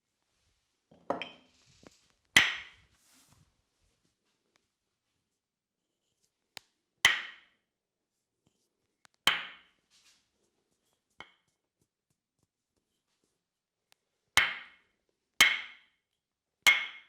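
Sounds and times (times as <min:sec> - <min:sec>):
wooden mallet knocking on wood: 0:02.4 - 0:02.7, 0:07.1 - 0:07.4, 0:09.3 - 0:09.6, 0:14.4 - 0:14.7, 0:15.4 - 0:15.8.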